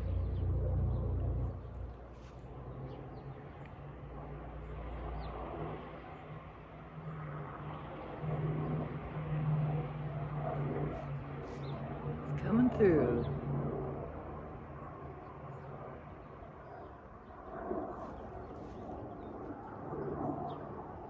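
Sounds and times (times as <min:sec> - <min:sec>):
engine drone with low hum: 0:00.0 - 0:16.7.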